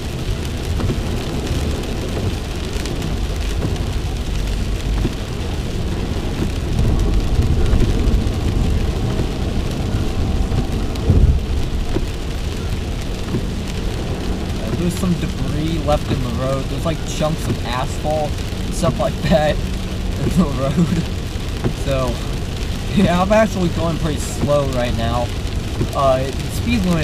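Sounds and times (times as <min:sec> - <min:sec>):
heavy rain on car: 0:00.0 - 0:27.0
tyres rumbling on wet road: 0:00.0 - 0:27.0
low thump: 0:11.0 - 0:12.1.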